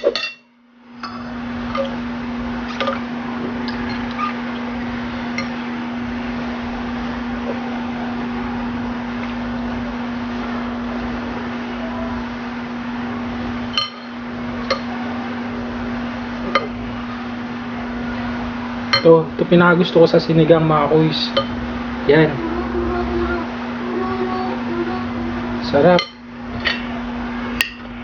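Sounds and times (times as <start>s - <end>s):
steady hum and hiss: 0.0s - 28.0s
spoon clinking against a dish: 26.0s - 26.3s.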